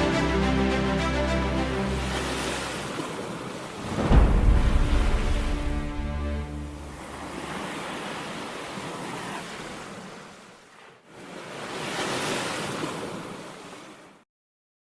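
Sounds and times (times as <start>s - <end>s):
surf breaking on beach: 1.8s - 10.2s.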